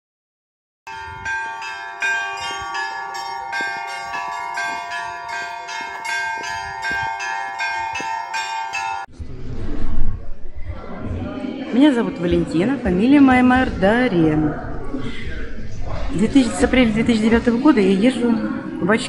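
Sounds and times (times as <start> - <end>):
church bells ringing: 0.9 - 9.1.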